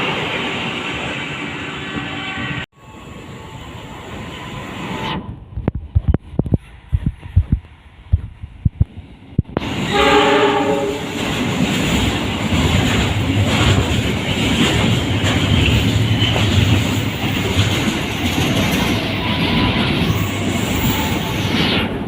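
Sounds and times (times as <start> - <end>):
train passing with rumble: 0.0 - 22.0
train horn blast: 9.6 - 11.2
clatter over rail joints: 10.7 - 20.4.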